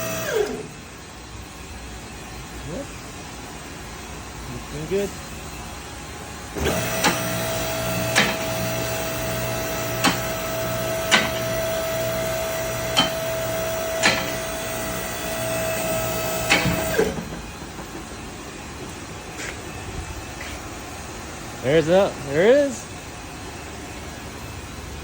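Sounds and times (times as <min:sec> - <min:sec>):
hydraulic pump motor running: 0:00.0 - 0:00.9, 0:06.4 - 0:23.0.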